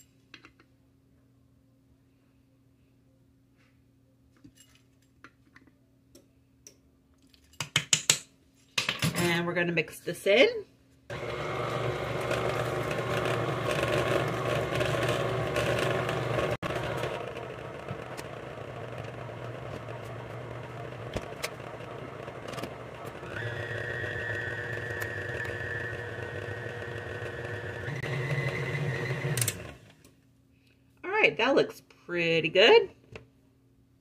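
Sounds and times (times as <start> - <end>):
electric mixer beating batter: 11.1 - 30.0.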